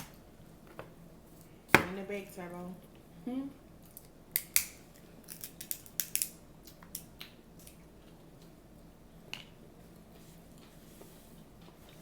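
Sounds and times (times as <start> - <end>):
crab shells cracking: 4.3 - 7.8.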